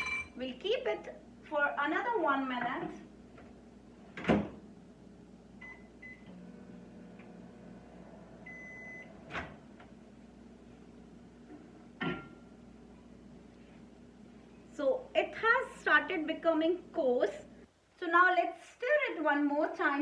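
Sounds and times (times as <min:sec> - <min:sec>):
microwave keypad beeps: 0:08.5 - 0:09.1.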